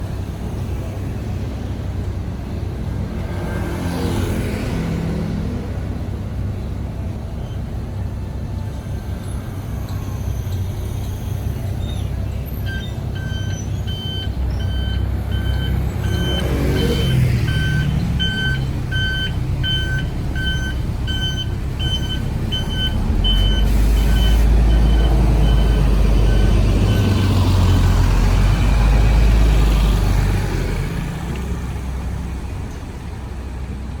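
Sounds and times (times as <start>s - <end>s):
bus engine rumble: 0.0s - 34.0s
reversing alarm beeping: 8.8s - 27.8s.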